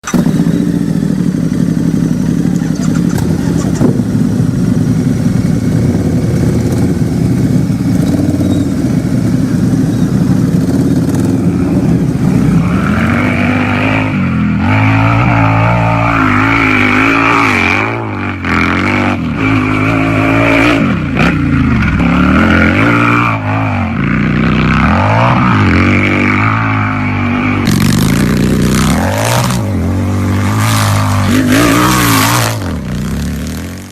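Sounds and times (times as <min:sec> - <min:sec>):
motorcycle engine idling: 0:00.0 - 0:12.6
motorcycle engine revving: 0:00.0 - 0:33.9.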